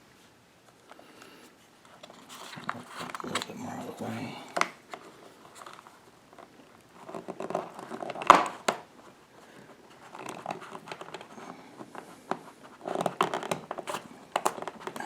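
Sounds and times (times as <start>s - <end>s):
rubbing and scraping: 1.9s - 4.2s
plastic clicks: 12.3s - 15.0s.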